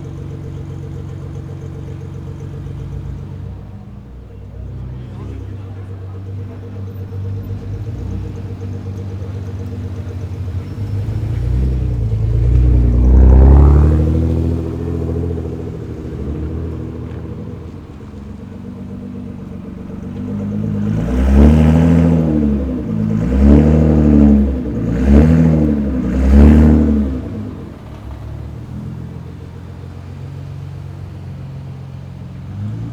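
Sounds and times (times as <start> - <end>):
car engine idling and revving: 0.0 - 32.9
exhaust popping and crackling: 0.0 - 32.9.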